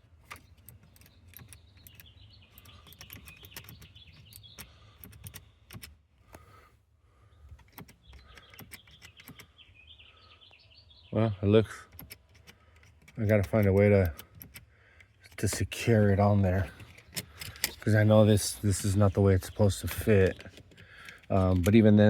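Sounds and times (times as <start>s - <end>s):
plastic connector parts clicking: 0.0s - 6.4s, 11.9s - 21.9s
birds chirping: 0.0s - 22.0s.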